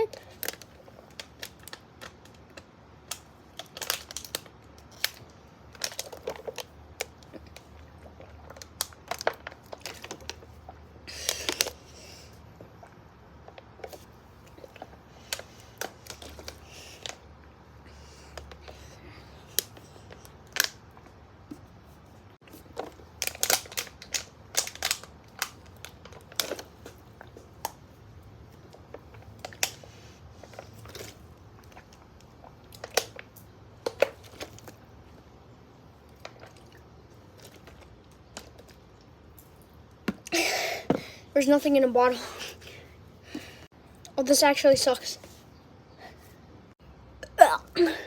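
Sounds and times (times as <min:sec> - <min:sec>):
plastic bottle crinkling: 0:00.0 - 0:12.0, 0:22.4 - 0:27.8.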